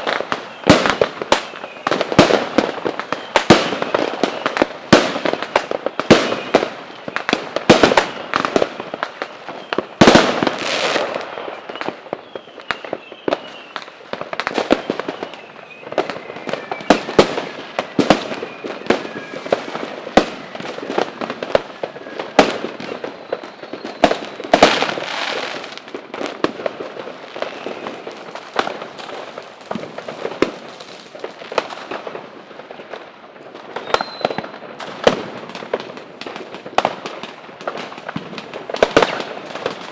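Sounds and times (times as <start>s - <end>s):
fireworks bangs and crackling: 0.0s - 39.9s
falling whistles: 0.4s - 2.1s, 3.0s - 4.7s, 11.3s - 19.6s, 21.9s - 24.5s, 27.4s - 28.1s, 33.8s - 34.6s.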